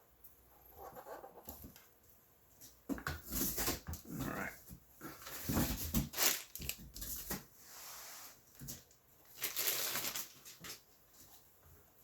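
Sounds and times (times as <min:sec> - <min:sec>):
packing material crinkling: 0:05.3 - 0:07.1, 0:08.8 - 0:10.8.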